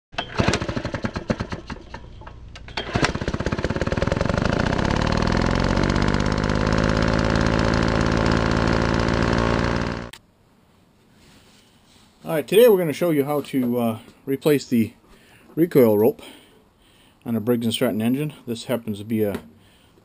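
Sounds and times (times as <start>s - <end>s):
lawn mower engine starting: 0.2s - 10.2s.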